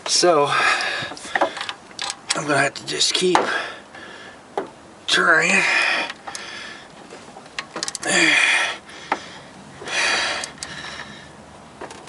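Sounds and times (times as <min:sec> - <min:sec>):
metal tool clicks: 0:07.6 - 0:08.0.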